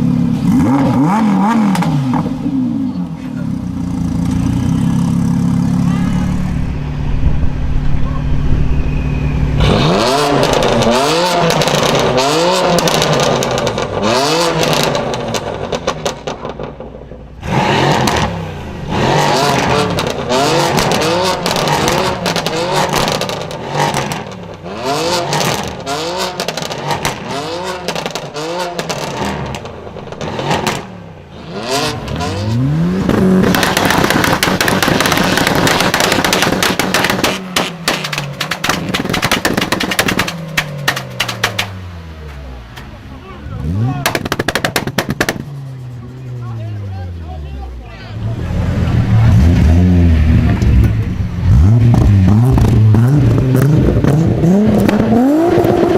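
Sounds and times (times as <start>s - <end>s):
car engine revving: 0.0s - 55.9s
crackling exhaust noise: 33.0s - 43.4s.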